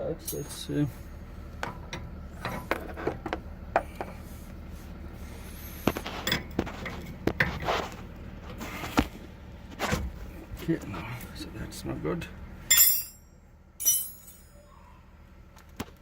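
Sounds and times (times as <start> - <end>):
metal hand tools clinking: 12.7 - 14.6.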